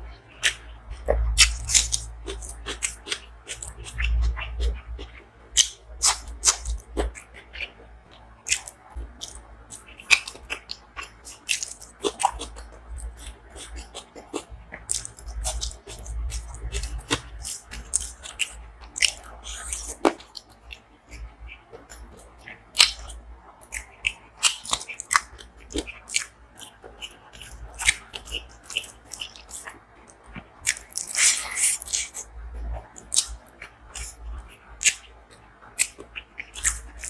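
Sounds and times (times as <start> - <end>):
person chewing food: 0.2 - 37.0.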